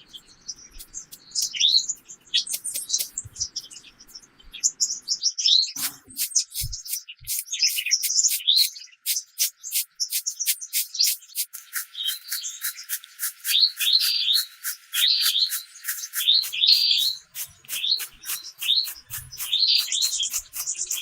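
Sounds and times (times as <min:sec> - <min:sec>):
songbirds chirping: 0:00.0 - 0:21.0.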